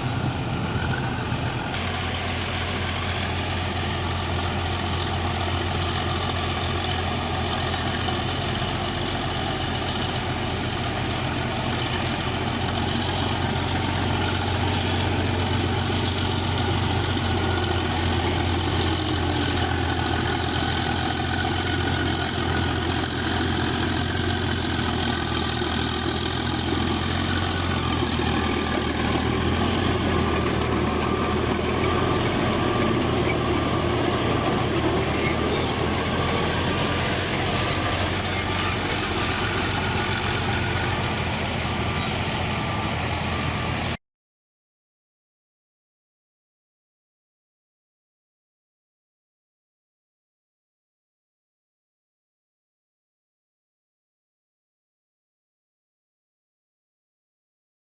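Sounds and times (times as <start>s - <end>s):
bulldozer diesel engine droning: 0.0s - 44.0s.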